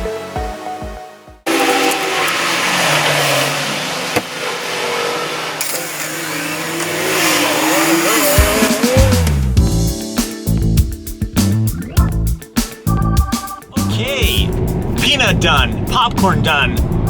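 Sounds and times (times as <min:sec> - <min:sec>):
vacuum cleaner running: 0:01.5 - 0:09.3.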